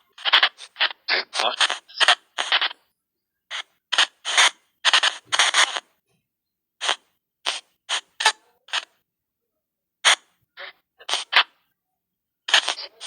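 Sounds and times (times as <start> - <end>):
garbled noisy bursts: 0.0 - 2.7, 6.8 - 8.9, 10.0 - 11.5, 12.5 - 13.0.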